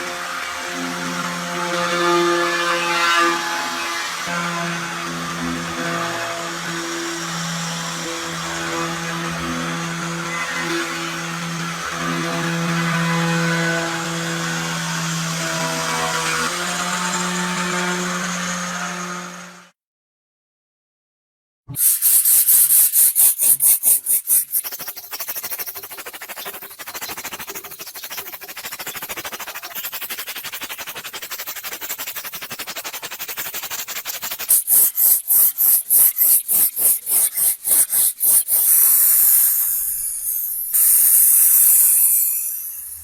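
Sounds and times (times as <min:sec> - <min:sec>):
metal scrubbed with abrasive: 0:21.8 - 0:43.0.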